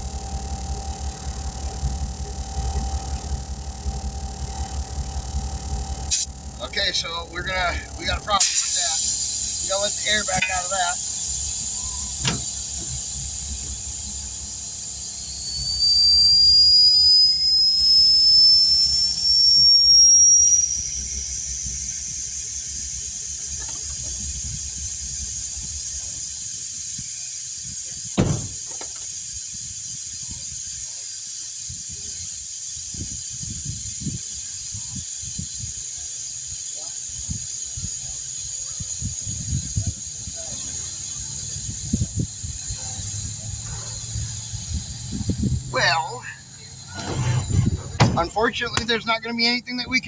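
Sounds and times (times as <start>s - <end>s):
air hissing out of tire valve: 6.1s - 6.4s, 8.4s - 48.9s
whistle rising in pitch: 15.0s - 22.4s
short knock: 28.2s - 28.9s, 47.0s - 48.2s.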